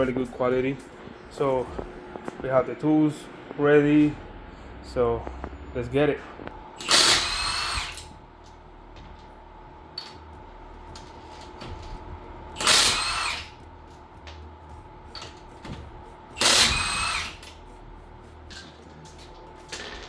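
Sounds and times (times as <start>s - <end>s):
impact wrench hammering: 6.8s - 8.1s, 12.6s - 13.6s, 16.4s - 17.6s.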